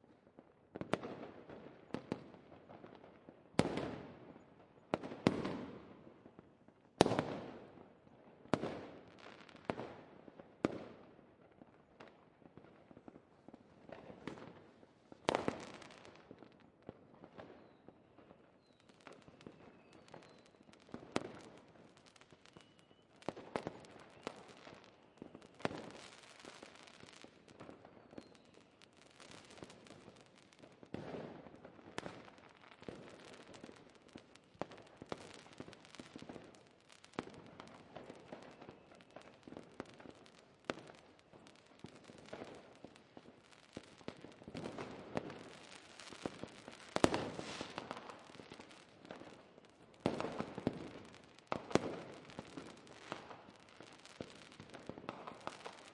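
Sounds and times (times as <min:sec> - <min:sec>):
fireworks crackling: 0:13.6 - 0:16.6, 0:18.6 - 0:55.9
fireworks bangs: 0:19.0 - 0:55.9.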